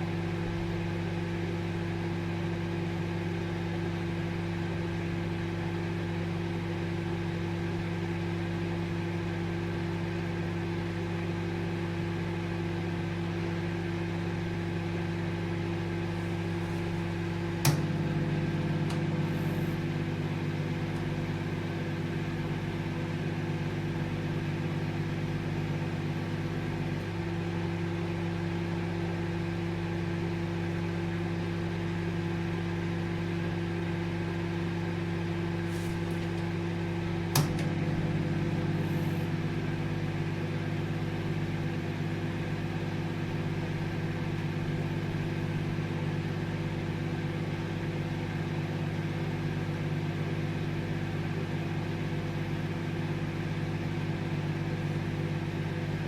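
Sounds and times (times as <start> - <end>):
microwave oven humming: 0.0 - 56.0
microwave click: 17.4 - 21.3, 35.7 - 40.1.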